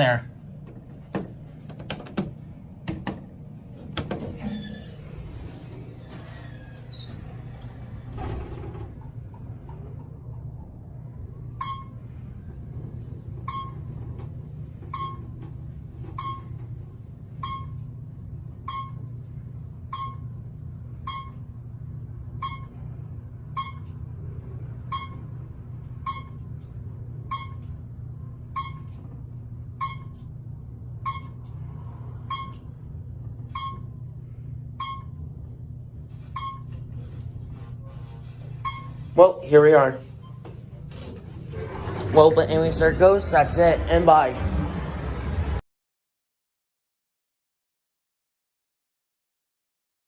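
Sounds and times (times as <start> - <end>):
elevator motors humming: 0.0 - 45.6
short electronic beeps: 19.9 - 20.3, 21.1 - 21.5, 22.4 - 22.8, 23.5 - 23.9, 26.1 - 26.4, 27.3 - 27.6, 29.8 - 30.2, 31.0 - 31.4, 33.6 - 33.9, 36.4 - 36.7.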